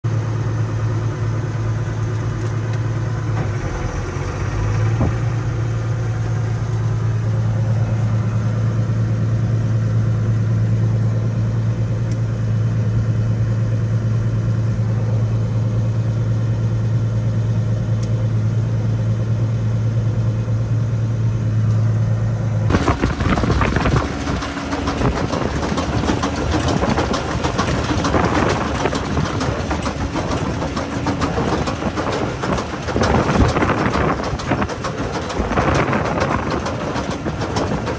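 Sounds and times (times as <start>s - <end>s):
baler machinery humming: 0.1s - 37.9s
fast rattling clatter: 22.7s - 37.9s.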